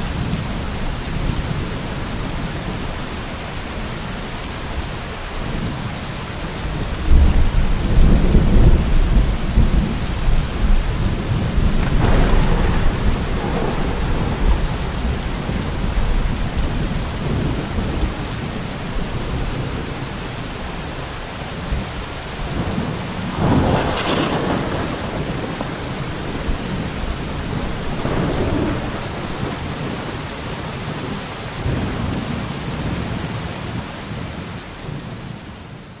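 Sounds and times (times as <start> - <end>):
heavy rain: 0.0 - 36.0
rolling thunder: 6.7 - 20.0, 21.7 - 33.0
thunder clap: 7.1 - 18.2, 22.4 - 30.4.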